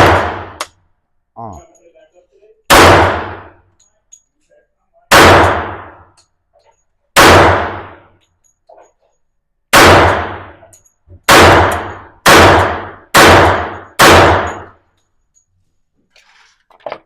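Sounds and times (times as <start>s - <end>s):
pistol shots echoing: 0.0s - 0.6s, 2.7s - 3.7s, 5.1s - 6.1s, 7.2s - 8.2s, 9.7s - 14.8s.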